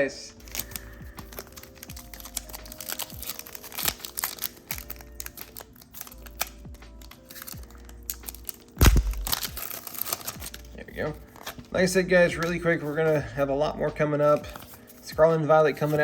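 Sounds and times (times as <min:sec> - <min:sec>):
foil wrapper crinkling and tearing: 0:00.4 - 0:11.8
cards rustling and clicking: 0:00.4 - 0:13.3, 0:14.1 - 0:16.0.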